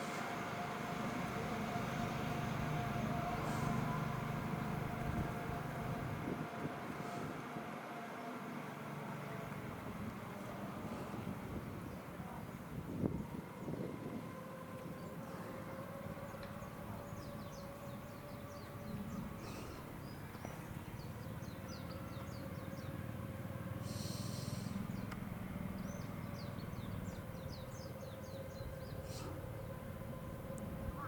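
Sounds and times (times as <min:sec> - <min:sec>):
steady low hum: 0:00.0 - 0:31.0
small birds chirping: 0:14.9 - 0:23.0, 0:23.9 - 0:29.9.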